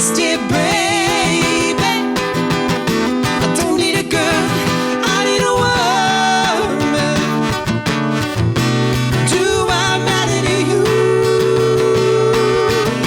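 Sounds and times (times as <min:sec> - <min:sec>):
person singing: 0:00.0 - 0:02.4, 0:03.4 - 0:07.5, 0:09.2 - 0:13.0
acoustic guitar playing: 0:00.0 - 0:13.0.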